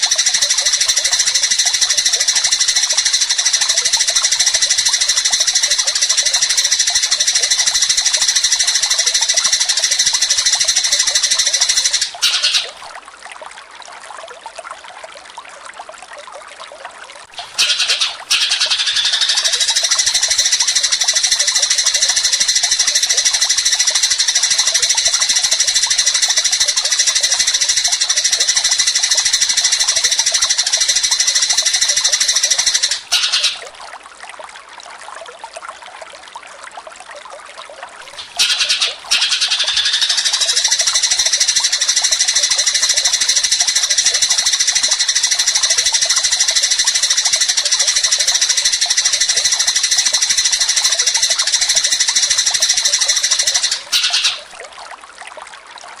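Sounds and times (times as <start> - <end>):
scattered bird chirps: 0.0 - 12.8, 17.3 - 33.7, 38.1 - 54.5
sparrows harsh chattering: 0.0 - 12.8, 17.4 - 33.7, 38.2 - 54.5
short bird chirps: 32.4 - 33.7.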